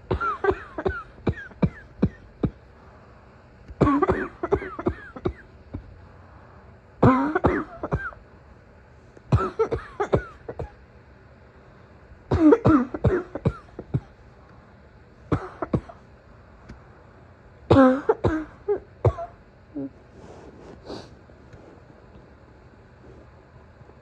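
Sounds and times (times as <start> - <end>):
woman coughing: 0.1 - 2.6, 3.8 - 5.5, 7.0 - 8.2, 9.3 - 10.8, 12.3 - 14.2, 15.3 - 16.0, 17.7 - 20.0.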